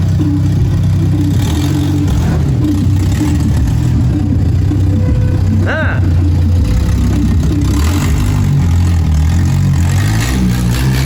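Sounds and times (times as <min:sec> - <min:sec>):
car engine: 0:00.0 - 0:11.0
heavy bass from car stereo: 0:00.0 - 0:11.0.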